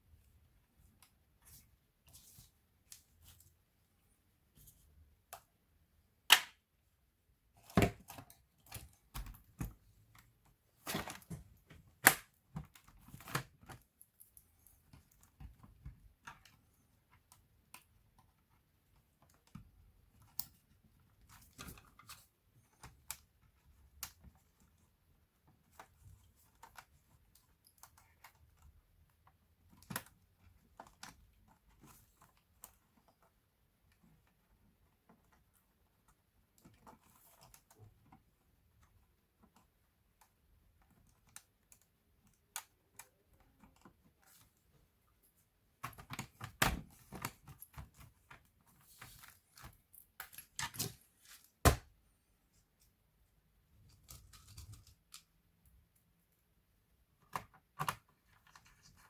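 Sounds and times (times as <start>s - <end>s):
laptop parts clicking and tapping: 6.3s - 6.6s.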